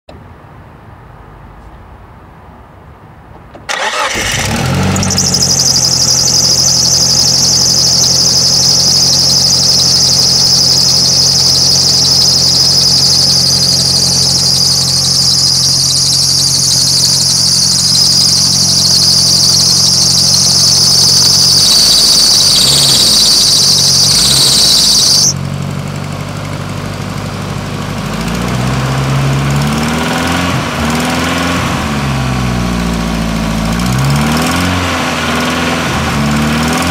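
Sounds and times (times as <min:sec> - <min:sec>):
car engine starting and idling: 0:03.2 - 0:36.9
high-pitched belt squeal: 0:03.7 - 0:25.4
engine revving: 0:03.7 - 0:25.8, 0:27.9 - 0:36.9
engine knocking: 0:03.8 - 0:31.1.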